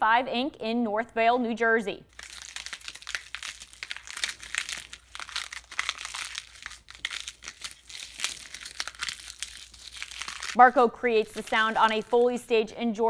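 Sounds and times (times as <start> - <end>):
dry material crunching by hand: 2.1 - 10.6, 11.3 - 12.4.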